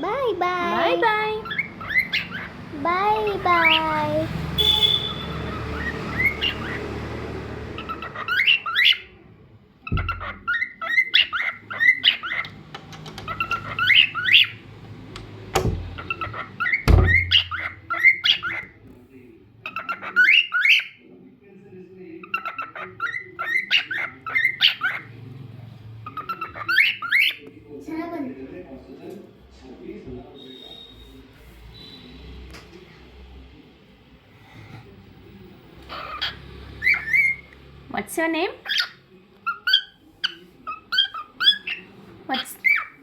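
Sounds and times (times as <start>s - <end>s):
cockatiel whistling: 4.6s - 6.8s
low thumps: 16.8s - 17.6s.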